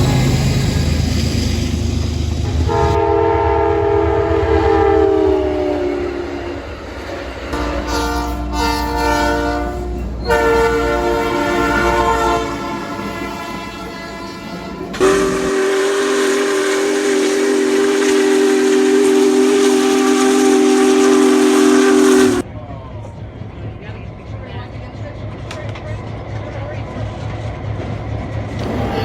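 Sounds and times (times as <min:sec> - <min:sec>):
train horn: 0:02.5 - 0:06.8, 0:07.5 - 0:22.4
hiss: 0:15.0 - 0:22.4.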